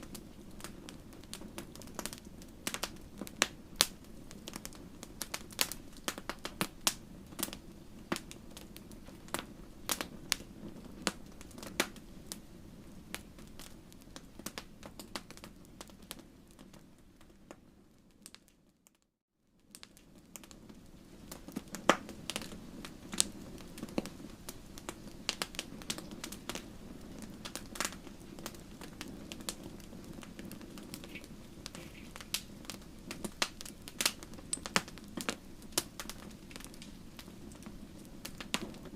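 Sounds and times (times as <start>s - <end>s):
bonfire crackling and popping: 0.0s - 19.0s, 19.6s - 38.9s
fire rushing: 20.3s - 38.9s.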